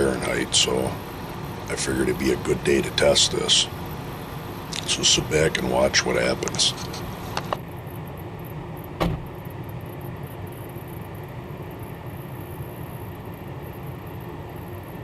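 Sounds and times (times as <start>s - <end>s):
low outdoor rumble: 0.0s - 15.0s
sharp knock: 9.0s - 9.3s.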